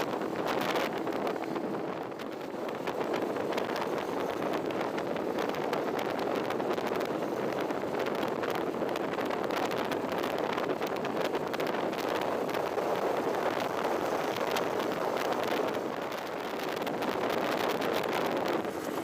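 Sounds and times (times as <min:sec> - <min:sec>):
road noise: 0:00.0 - 0:19.0
wind buffeting microphone: 0:00.0 - 0:19.0.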